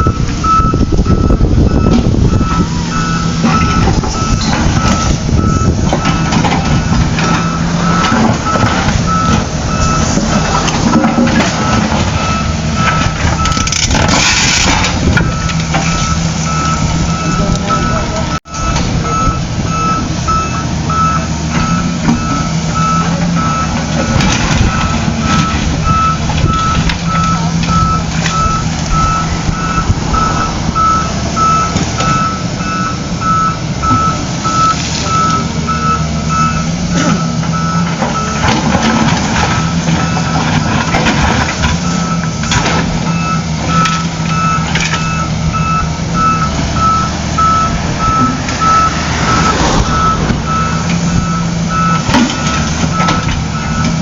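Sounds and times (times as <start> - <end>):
diesel engine running: 0.0 - 54.0
reversing alarm beeping: 0.0 - 54.0.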